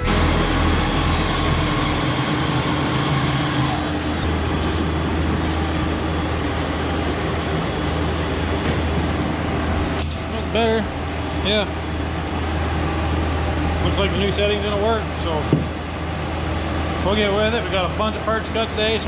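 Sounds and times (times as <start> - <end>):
cnc router cutting: 0.0 - 6.2
dust collector running: 0.0 - 8.4.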